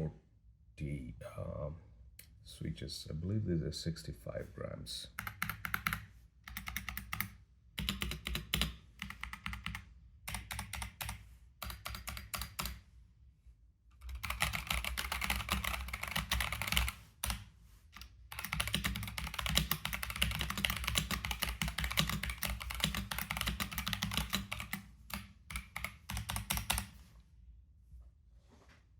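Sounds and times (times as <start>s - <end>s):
mechanical keyboard typing: 5.2s - 12.8s, 14.0s - 17.4s, 18.0s - 27.0s.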